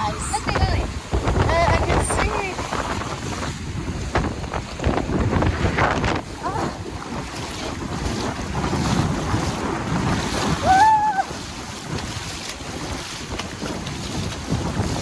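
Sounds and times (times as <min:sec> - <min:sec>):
sea waves: 0:00.0 - 0:15.0
wind buffeting microphone: 0:00.0 - 0:15.0.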